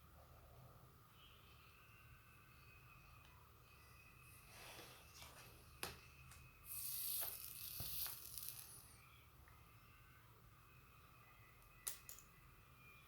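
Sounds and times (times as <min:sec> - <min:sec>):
soldering iron hiss: 0:06.6 - 0:09.0.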